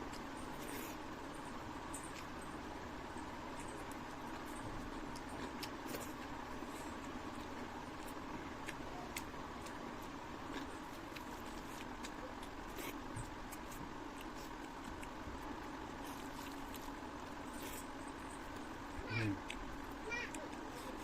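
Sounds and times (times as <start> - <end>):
steady background hum: 0.0 - 21.0
chewing clicks and smacks: 3.5 - 6.4, 7.0 - 21.0.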